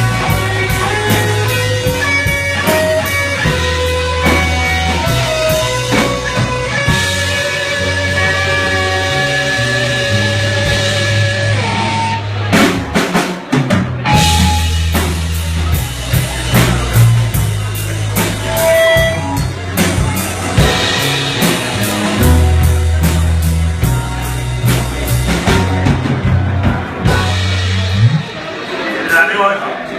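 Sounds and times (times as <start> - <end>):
bass guitar notes: 0.0 - 29.0
electric guitar: 0.0 - 29.0
drum kit hits: 0.0 - 29.1.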